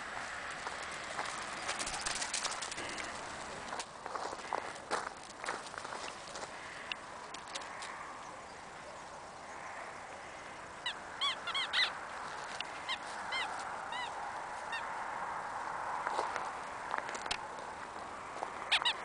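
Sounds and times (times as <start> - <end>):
squeaky toy squeaking: 10.8 - 11.9, 18.7 - 19.0.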